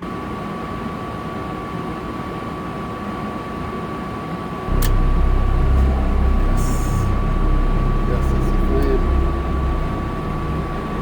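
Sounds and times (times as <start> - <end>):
furnace hum with high whine: 0.0 - 11.0
furnace low rumble: 4.6 - 11.0.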